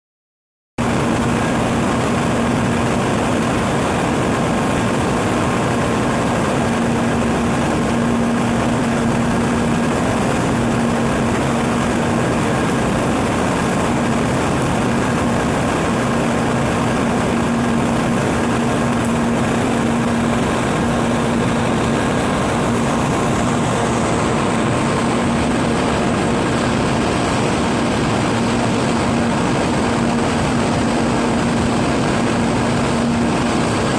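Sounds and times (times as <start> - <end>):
train equipment humming: 0.8 - 33.9.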